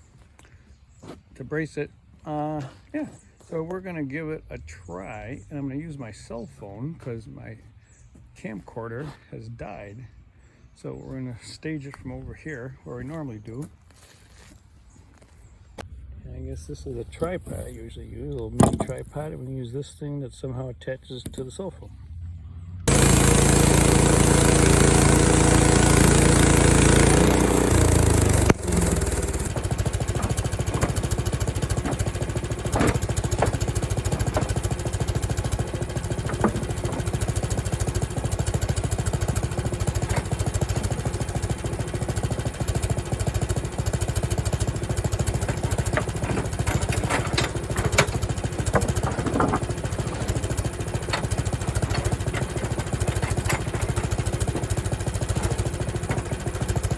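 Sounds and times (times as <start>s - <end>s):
small gasoline engine running: 22.5s - 56.9s
saw cutting log: 22.9s - 56.9s.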